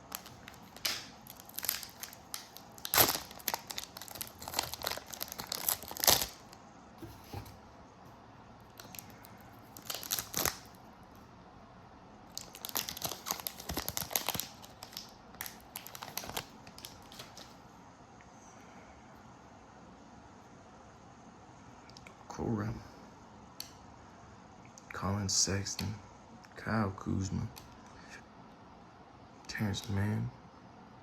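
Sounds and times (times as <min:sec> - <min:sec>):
wrapper crinkling and tearing: 0:00.0 - 0:06.6, 0:08.8 - 0:10.8, 0:12.3 - 0:17.5.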